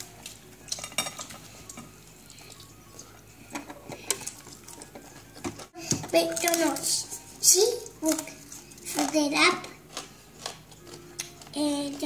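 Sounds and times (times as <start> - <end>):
dishes clicking and clattering: 0.6 - 1.9.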